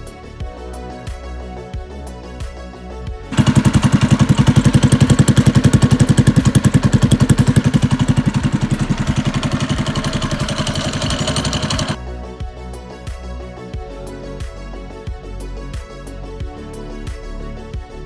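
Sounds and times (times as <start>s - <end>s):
small engine chugging: 3.3s - 12.0s.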